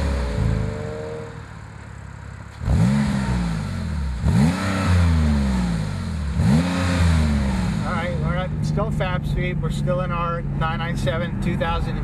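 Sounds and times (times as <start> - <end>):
car engine revs falling: 0.0 - 8.8
engine throttle blips: 0.0 - 12.0.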